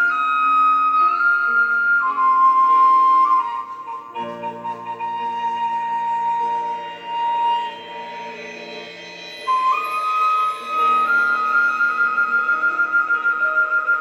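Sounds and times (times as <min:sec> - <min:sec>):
bamboo flute melody: 0:00.0 - 0:14.0
soft sustained backing: 0:00.0 - 0:14.0.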